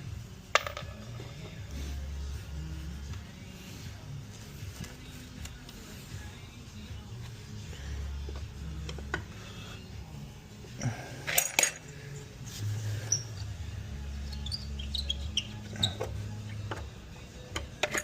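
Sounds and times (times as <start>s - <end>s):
metal screws clinking: 11.2s - 12.3s, 17.5s - 18.0s.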